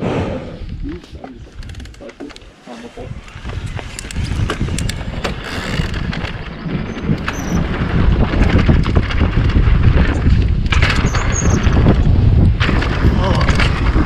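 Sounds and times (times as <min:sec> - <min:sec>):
wind buffeting microphone: 0:00.0 - 0:14.0
bike rolling on dirt trail: 0:01.4 - 0:14.0
bike frame rattling clicks: 0:01.5 - 0:02.5, 0:03.2 - 0:12.1.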